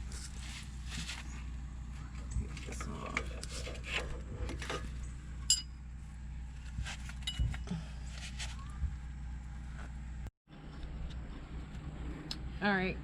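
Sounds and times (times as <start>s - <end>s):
metal tools clinking: 5.4s - 5.8s.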